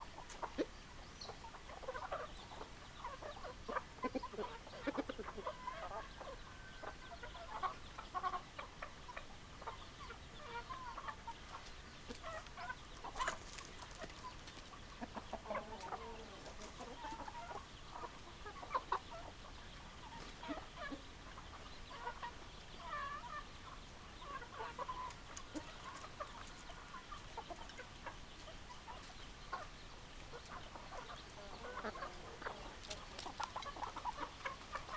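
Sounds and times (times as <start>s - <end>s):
hens clucking: 0.0s - 34.9s.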